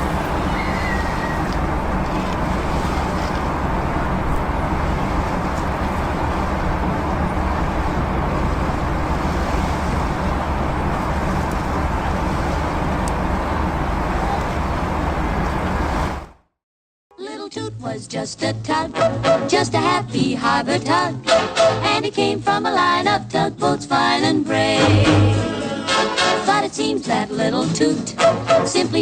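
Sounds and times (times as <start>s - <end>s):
city street traffic: 0.0s - 16.4s.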